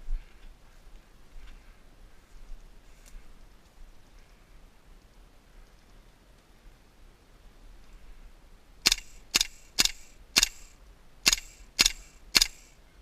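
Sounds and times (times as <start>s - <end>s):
airsoft rifle shots: 8.8s - 12.8s.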